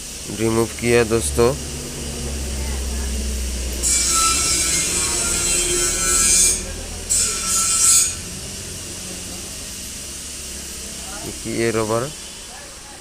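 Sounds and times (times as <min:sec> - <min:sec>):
metal scraping on metal: 0:00.7 - 0:08.9.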